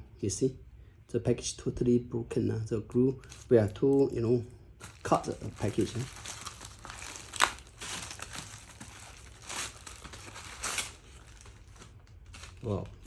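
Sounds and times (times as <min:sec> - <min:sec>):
packaging being torn open: 0:04.8 - 0:13.0.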